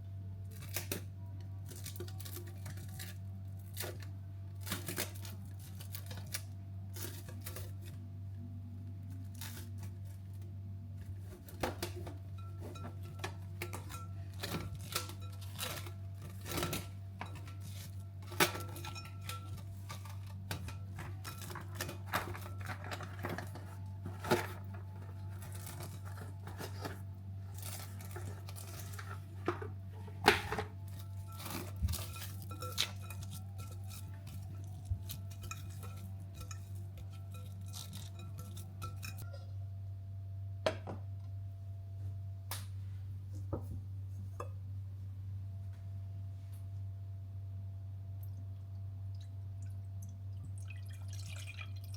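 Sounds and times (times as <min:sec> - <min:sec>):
steady low hum: 0:00.0 - 0:51.9
utensils and dishes clinking: 0:11.1 - 0:39.5.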